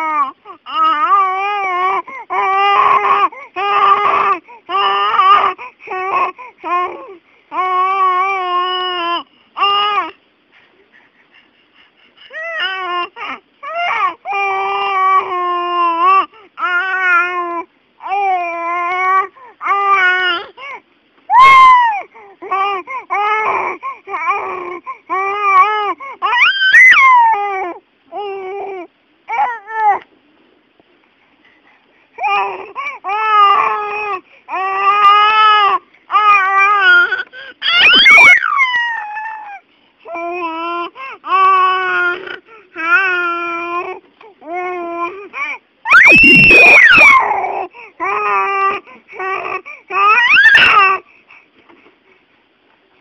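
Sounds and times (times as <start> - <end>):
baby crying: 0.0 - 10.2, 12.3 - 20.6, 21.3 - 30.0, 32.2 - 51.0
baby squealing: 21.3 - 22.0, 26.2 - 27.3, 36.4 - 39.6, 45.9 - 47.6, 49.9 - 51.0
baby vocalizing: 40.2 - 45.4.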